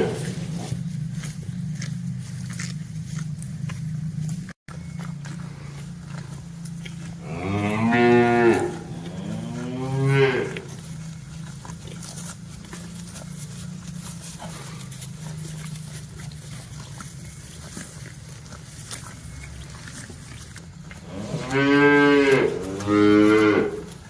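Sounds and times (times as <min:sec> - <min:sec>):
cow mooing: 0:00.0 - 0:00.8, 0:07.1 - 0:11.0, 0:21.0 - 0:24.0
steady low hum: 0:00.0 - 0:24.0.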